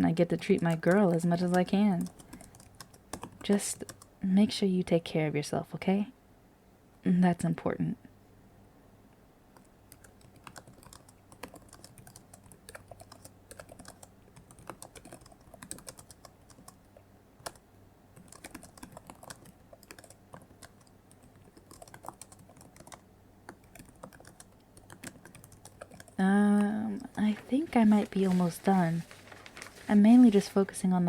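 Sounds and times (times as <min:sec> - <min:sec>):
computer keyboard typing: 0:00.0 - 0:04.1, 0:09.6 - 0:17.6, 0:18.2 - 0:30.2.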